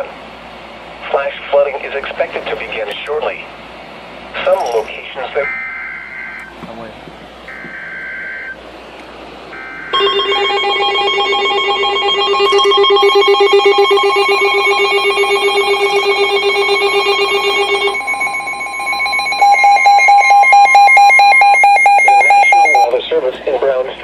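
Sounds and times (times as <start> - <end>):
steady warning tone: 0.0 - 8.6, 9.3 - 24.0
pulsing ringing alarm: 4.4 - 6.6, 7.5 - 8.6, 9.5 - 23.0.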